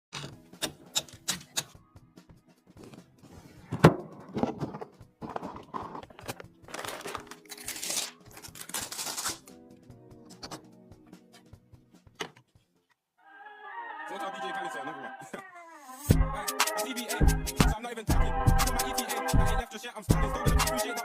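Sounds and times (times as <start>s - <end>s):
background music: 0.1s - 21.0s
packaging rustling: 4.4s - 9.5s.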